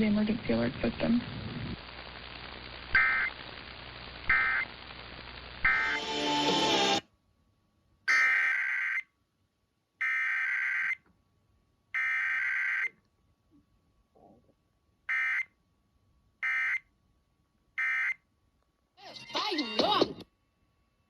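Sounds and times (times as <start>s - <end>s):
buzzy screechy data bursts: 0.5s - 6.9s.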